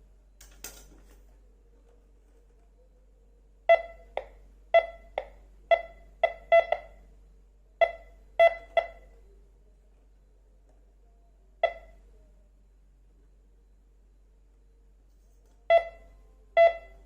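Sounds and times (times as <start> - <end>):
metal detector beeping: 3.7 - 7.0, 7.8 - 9.2, 11.6 - 12.0, 15.7 - 17.0.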